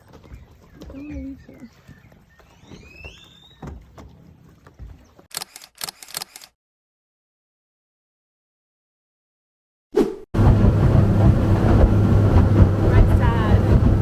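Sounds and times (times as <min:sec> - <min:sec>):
sharp clicks: 0:05.3 - 0:06.5.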